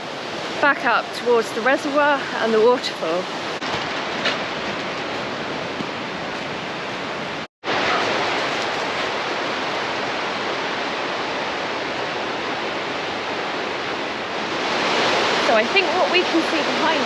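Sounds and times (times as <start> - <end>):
river water rushing: 0.0 - 17.0.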